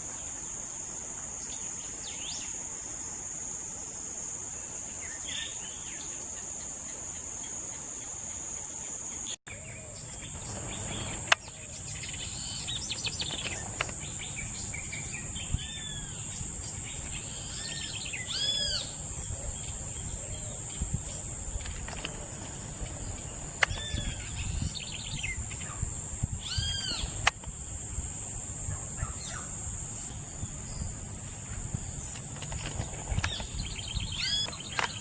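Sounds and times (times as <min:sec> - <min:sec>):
high-pitched insect chorus: 0:00.0 - 0:35.0
birds chirping: 0:09.2 - 0:27.7, 0:28.6 - 0:35.0.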